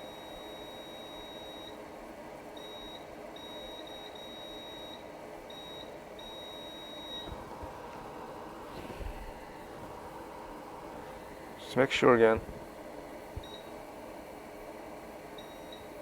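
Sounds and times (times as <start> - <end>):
multimeter continuity beeps: 0.0 - 1.9, 2.6 - 7.4, 13.4 - 13.8, 15.4 - 16.0.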